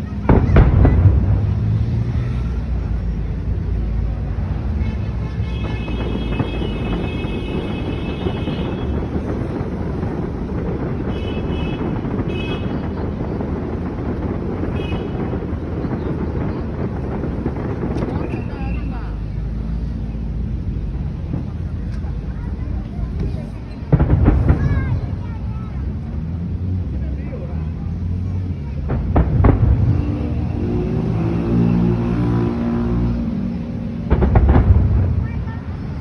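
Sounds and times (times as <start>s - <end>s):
crowd din: 0.0s - 36.0s
firework boom: 0.1s - 22.3s, 23.0s - 26.9s, 28.1s - 32.2s, 34.0s - 35.8s.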